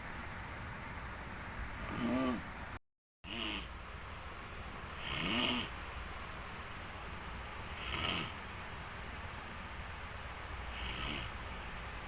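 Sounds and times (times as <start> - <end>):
person snoring: 1.8 - 2.5, 3.3 - 3.7, 5.0 - 5.8, 7.8 - 8.4, 10.7 - 11.4.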